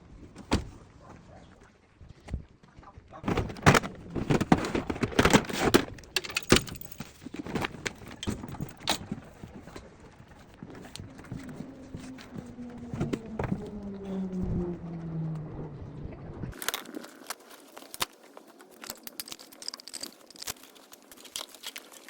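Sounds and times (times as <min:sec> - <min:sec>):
metal gate parts clanking: 0:05.2 - 0:09.0.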